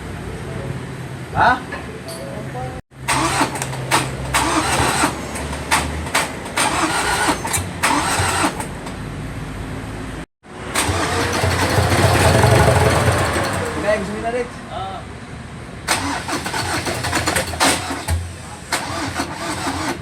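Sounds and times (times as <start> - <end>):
diesel engine running: 2.9 - 14.5, 15.8 - 20.0.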